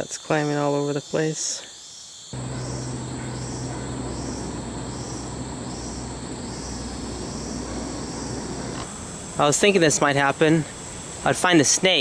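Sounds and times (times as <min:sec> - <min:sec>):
insects hissing: 0:00.0 - 0:11.4
pulsing insect call: 0:00.2 - 0:08.9
low hum: 0:02.4 - 0:08.9.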